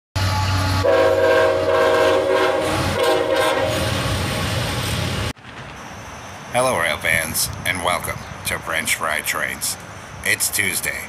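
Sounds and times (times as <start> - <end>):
locomotive air horn blasts: 0.2 - 3.9
locomotive rumble: 0.2 - 11.0.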